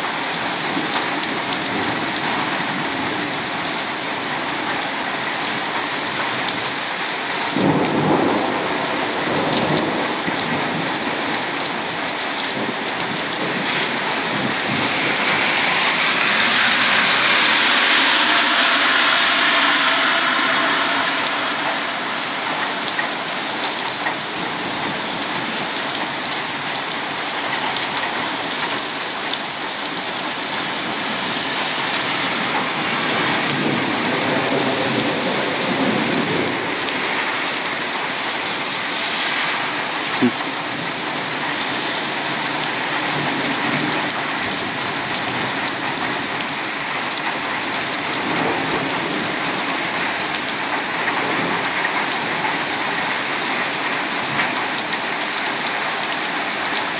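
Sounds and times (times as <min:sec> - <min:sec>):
heavy rain pouring: 0:00.0 - 0:56.9
thunder rumbling: 0:05.5 - 0:46.5.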